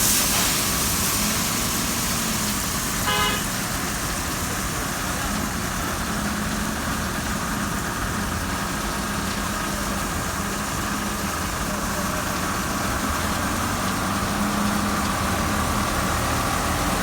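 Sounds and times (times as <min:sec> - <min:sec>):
engine and traffic noise: 0:00.0 - 0:17.0
truck horn toot: 0:03.0 - 0:03.8.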